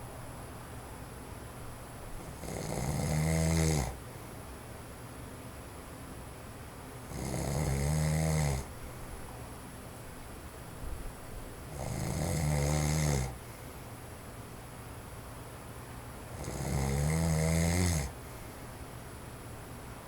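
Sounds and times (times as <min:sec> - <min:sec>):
man snoring: 0:02.2 - 0:04.0, 0:07.1 - 0:08.7, 0:11.7 - 0:13.4, 0:16.3 - 0:18.2.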